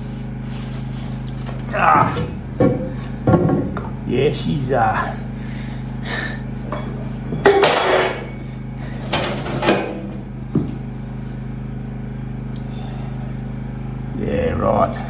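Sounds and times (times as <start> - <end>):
steady low hum: 0.0 - 15.0
metal engine parts clanking: 6.6 - 10.3.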